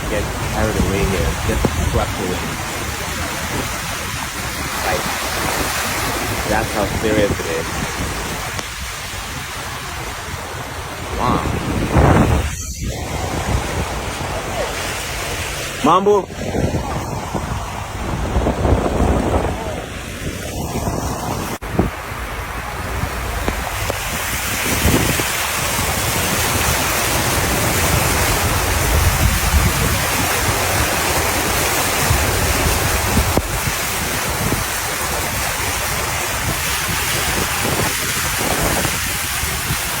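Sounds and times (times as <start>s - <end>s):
floodwater rushing and splashing: 0.0s - 40.0s
wind buffeting microphone: 0.0s - 40.0s.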